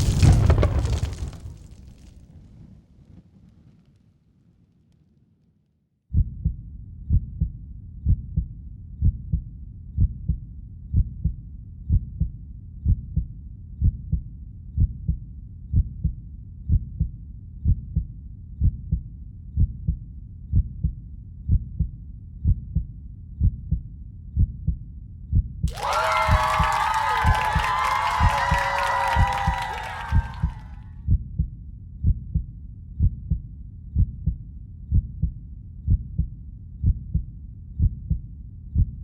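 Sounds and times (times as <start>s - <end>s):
heartbeat thumping: 6.2s - 23.8s, 24.4s - 25.7s, 27.3s - 38.2s
crowd cheering: 25.7s - 30.9s.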